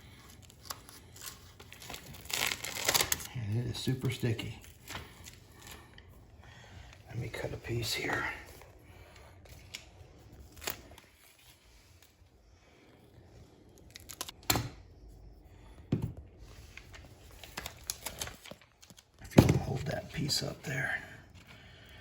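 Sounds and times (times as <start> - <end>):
flooring material crinkling and snapping: 0.2 - 6.0, 16.5 - 19.9.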